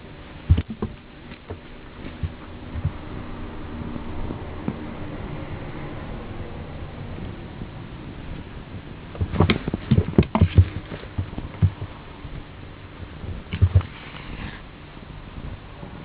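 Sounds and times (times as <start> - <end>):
cats fighting thumps: 0.5 - 3.0, 9.2 - 12.0, 13.3 - 14.1.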